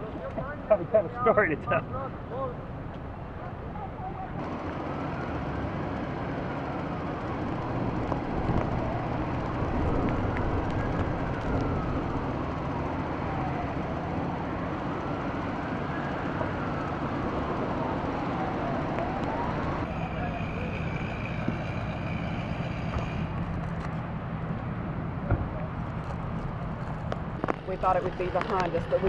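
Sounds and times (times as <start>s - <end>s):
low rumble of vehicles: 0.0s - 29.0s
emergency siren wailing: 3.8s - 26.0s.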